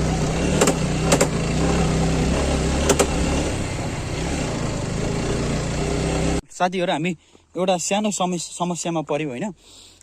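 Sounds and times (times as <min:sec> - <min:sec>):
motorcycle engine running: 0:00.0 - 0:06.4
sharp knocks: 0:00.5 - 0:01.4, 0:02.8 - 0:03.2.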